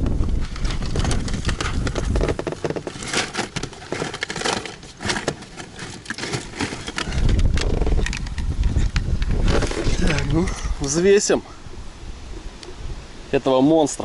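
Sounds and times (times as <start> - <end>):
wind buffeting microphone: 0.0 - 3.0, 6.8 - 13.8
rustling and clicking handling: 0.3 - 10.7.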